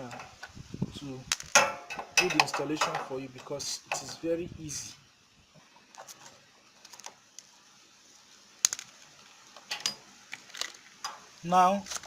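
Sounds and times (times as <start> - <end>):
hand tools clicking and tapping metal: 0.0 - 0.6, 1.3 - 4.2, 9.6 - 11.3.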